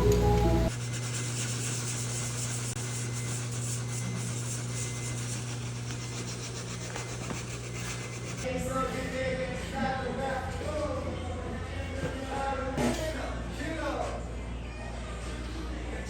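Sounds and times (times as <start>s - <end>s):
low machine hum: 0.0s - 0.9s.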